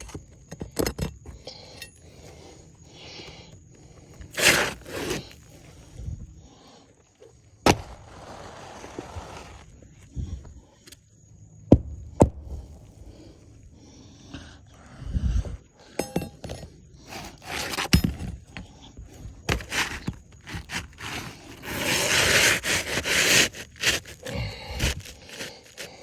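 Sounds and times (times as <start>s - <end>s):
scraping: 4.3s - 5.6s, 19.5s - 26.0s.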